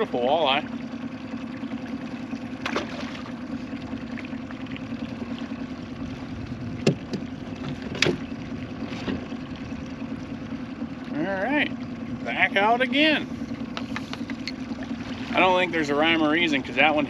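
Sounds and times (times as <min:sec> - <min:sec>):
boat motor humming: 0:00.0 - 0:17.0
sharp knocks: 0:06.8 - 0:07.2.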